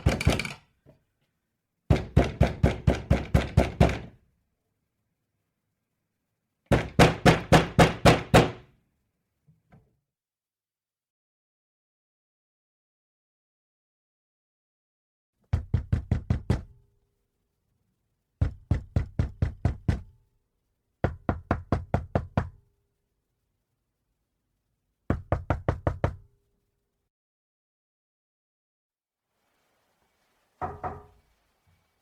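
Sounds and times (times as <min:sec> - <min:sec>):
knuckles knocking on a door: 0:01.9 - 0:04.2, 0:15.5 - 0:16.7, 0:18.4 - 0:20.1, 0:21.0 - 0:22.6, 0:25.1 - 0:26.2, 0:30.6 - 0:31.1.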